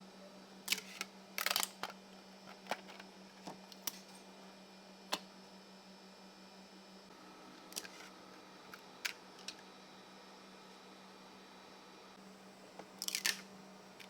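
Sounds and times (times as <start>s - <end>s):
steady low hum: 0.0s - 14.0s
plastic parts clicking: 0.7s - 2.0s.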